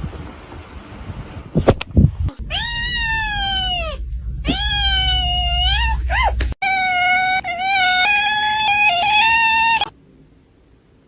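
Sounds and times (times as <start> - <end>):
cat meowing: 2.4 - 9.9.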